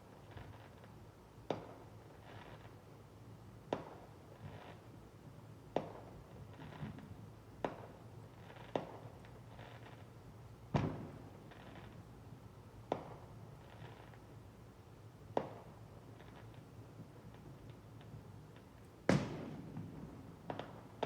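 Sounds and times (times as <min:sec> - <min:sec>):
fireworks bangs: 0:10.7 - 0:12.0, 0:19.0 - 0:21.0.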